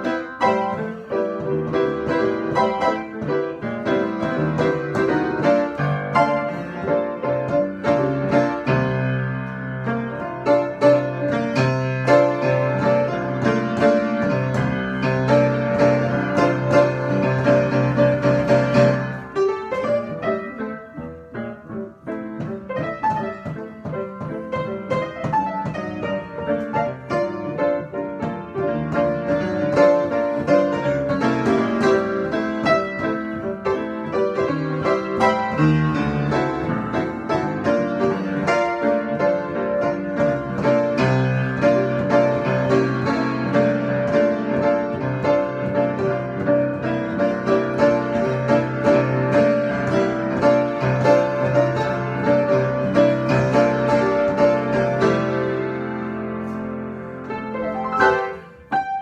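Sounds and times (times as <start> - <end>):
piano improvisation: 0.0 - 59.0.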